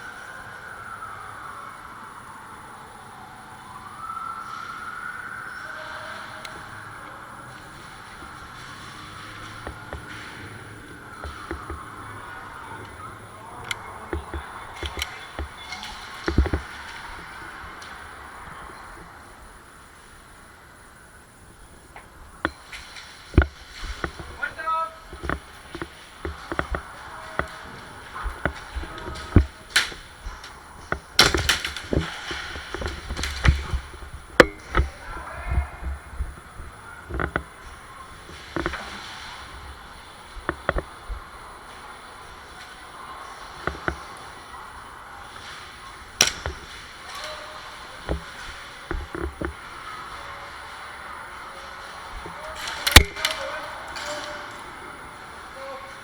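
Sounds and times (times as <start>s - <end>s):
steady hiss: 0.0s - 56.0s
sharp clicks: 13.6s - 19.1s, 21.5s - 38.8s, 52.2s - 54.7s.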